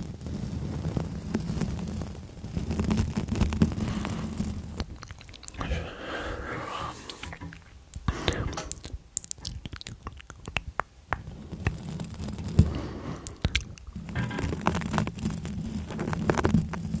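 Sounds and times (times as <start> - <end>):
wet lip and tongue clicks: 4.8 - 5.7, 7.1 - 11.8, 13.2 - 14.0.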